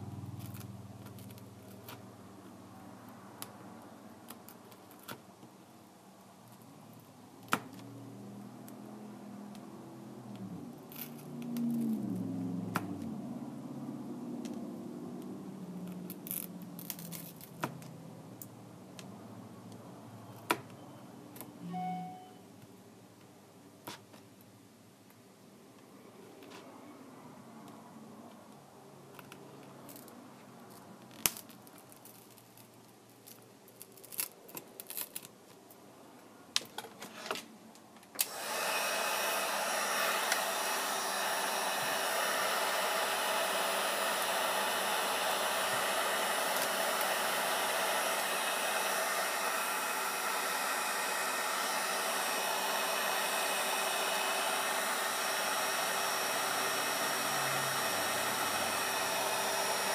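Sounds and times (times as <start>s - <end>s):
hot-air blower running: 38.2s - 59.9s.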